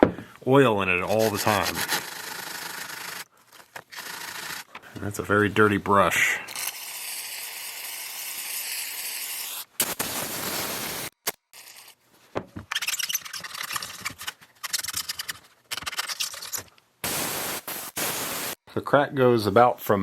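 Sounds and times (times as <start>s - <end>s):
aerosol spray hissing: 9.4s - 11.2s, 17.0s - 18.6s.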